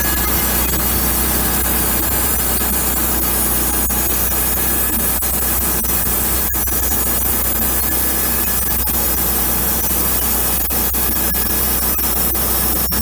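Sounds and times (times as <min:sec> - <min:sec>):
band saw cutting wood: 0:00.0 - 0:09.5.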